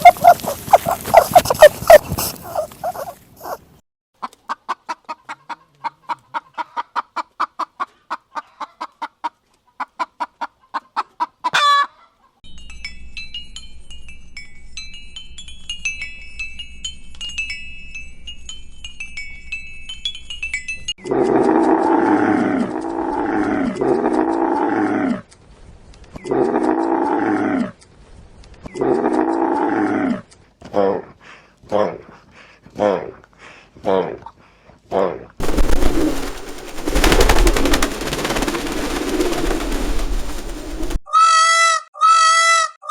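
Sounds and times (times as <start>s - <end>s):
pigeons cooing: 0.0s - 3.2s, 35.4s - 41.0s
wing flaps and scuffling: 0.0s - 3.2s, 35.4s - 41.0s
tinkling bell-like melody: 12.4s - 21.0s.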